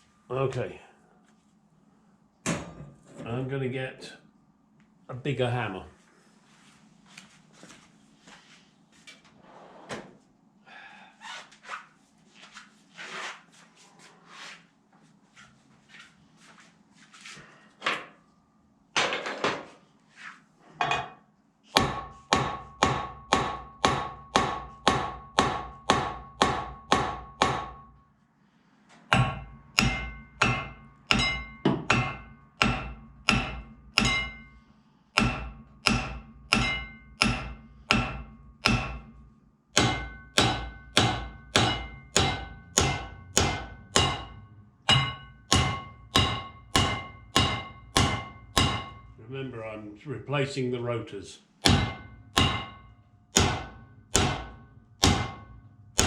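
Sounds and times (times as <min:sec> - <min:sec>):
tools knocking and clanking: 0:20.8 - 0:21.2, 0:29.0 - 0:34.5, 0:39.8 - 0:49.2
hammer blows ringing on metal: 0:21.7 - 0:28.0, 0:29.1 - 0:49.2, 0:51.6 - 0:56.0.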